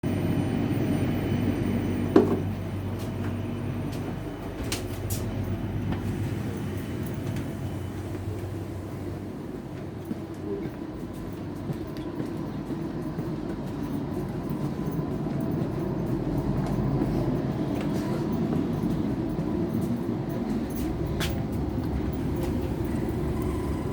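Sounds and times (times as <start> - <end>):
passenger train rumbling: 0.0 - 23.9.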